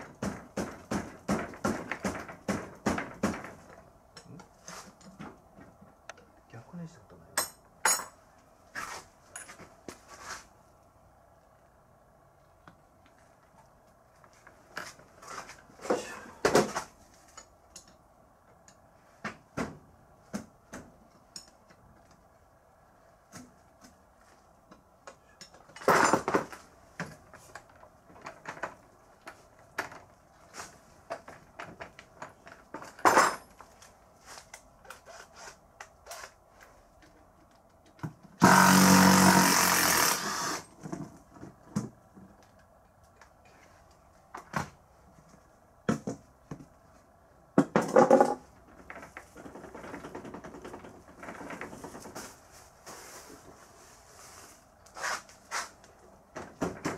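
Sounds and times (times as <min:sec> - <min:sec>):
power tool running: 0:38.4 - 0:40.7.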